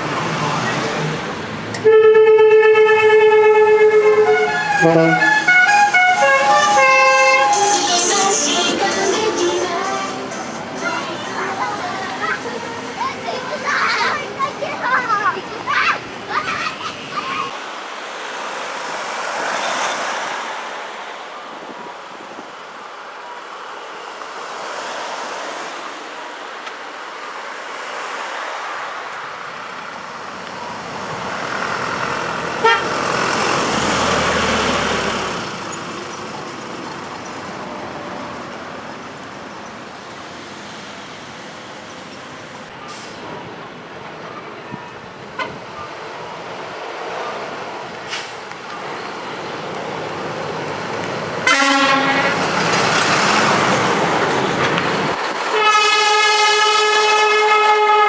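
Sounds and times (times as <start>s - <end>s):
trucks driving past: 0.0s - 58.0s
horn toots: 1.8s - 9.4s, 32.6s - 33.2s, 51.4s - 52.8s, 55.5s - 58.0s.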